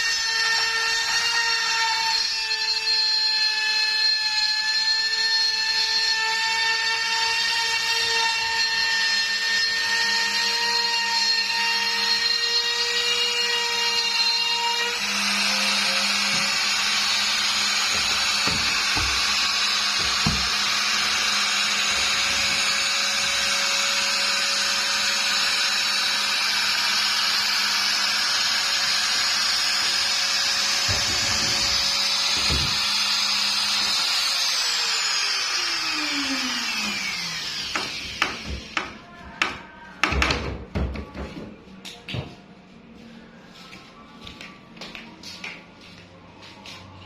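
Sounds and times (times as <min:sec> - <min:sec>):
machine motor whine: 0:14.0 - 0:38.8.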